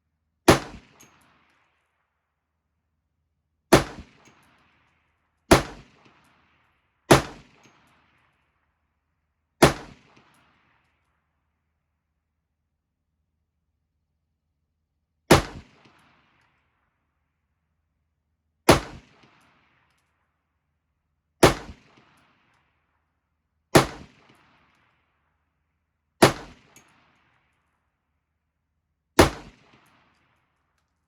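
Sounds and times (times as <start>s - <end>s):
rifle shots with echo: 0.5s - 1.7s, 3.7s - 4.8s, 5.5s - 8.2s, 9.6s - 10.6s, 15.3s - 16.4s, 18.7s - 19.6s, 21.4s - 22.4s, 23.7s - 24.8s, 26.2s - 27.2s, 29.2s - 30.2s.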